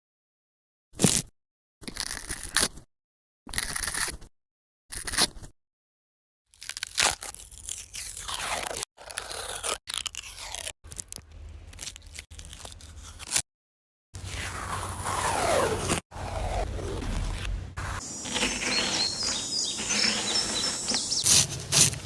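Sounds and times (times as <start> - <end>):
crunching and crackling: 6.5 - 13.4, 14.5 - 22.0.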